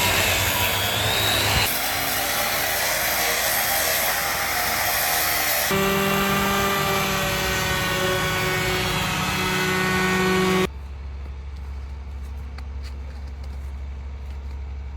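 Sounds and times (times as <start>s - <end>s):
electric power tool running: 0.0s - 10.7s.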